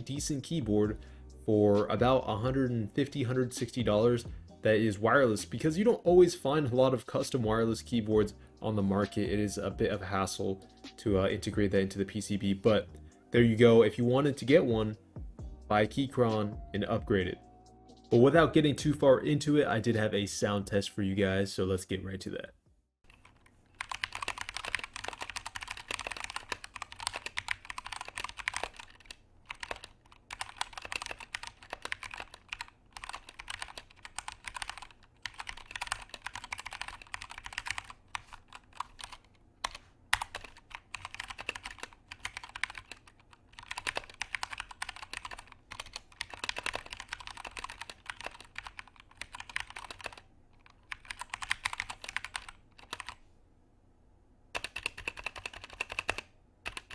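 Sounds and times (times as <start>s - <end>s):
mechanical keyboard typing: 23.1s - 53.2s, 54.6s - 56.9s.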